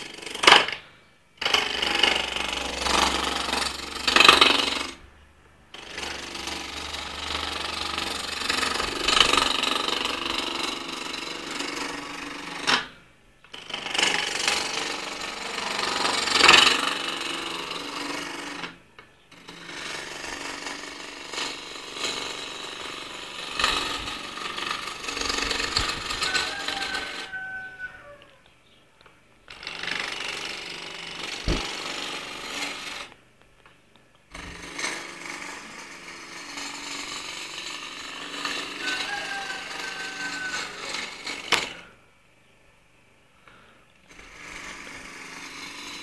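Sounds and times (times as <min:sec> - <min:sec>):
chisel scraping spinning wood: 0:00.0 - 0:00.8, 0:01.4 - 0:05.0, 0:05.7 - 0:28.1, 0:29.5 - 0:33.2, 0:34.3 - 0:42.0, 0:43.5 - 0:46.0.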